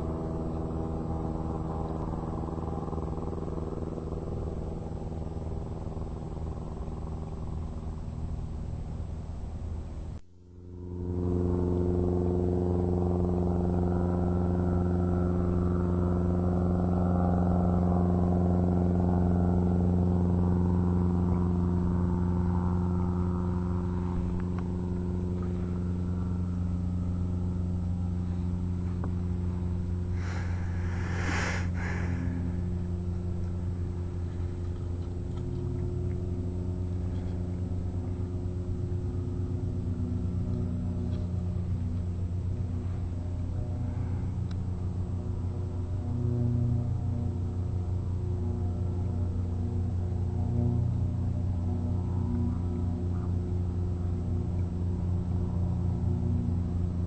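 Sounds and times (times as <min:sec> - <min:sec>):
engine droning steadily: 0:00.0 - 0:57.0
brief rushing noise: 0:30.2 - 0:32.6.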